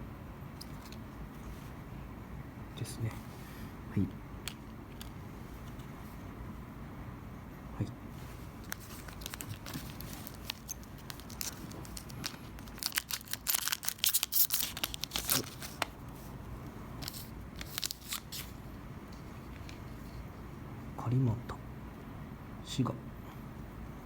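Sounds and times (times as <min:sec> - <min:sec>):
foil wrapper tearing and crinkling: 0:08.7 - 0:16.0, 0:17.0 - 0:18.5.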